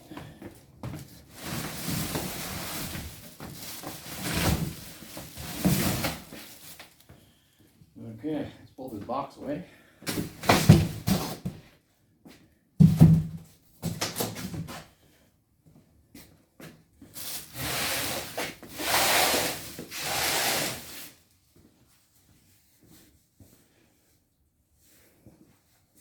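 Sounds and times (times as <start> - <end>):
cardboard scraping: 1.2 - 6.8
cardboard box thumps: 10.1 - 11.5, 12.8 - 14.0.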